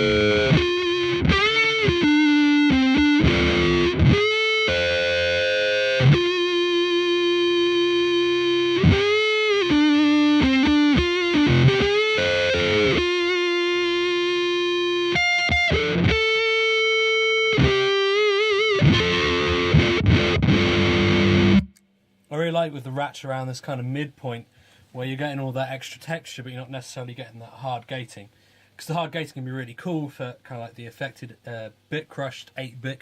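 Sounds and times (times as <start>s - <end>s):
fuzz electric guitar notes: 0.0s - 21.8s.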